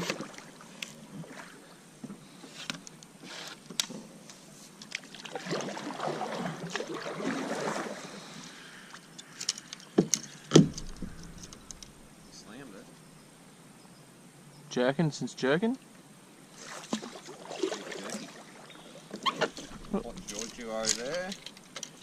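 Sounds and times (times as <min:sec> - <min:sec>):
water noise: 0:00.0 - 0:03.0, 0:04.6 - 0:13.0, 0:16.4 - 0:22.0
rustling: 0:09.2 - 0:13.0, 0:19.2 - 0:22.0
gear knocking against kayak hull: 0:10.0 - 0:12.0.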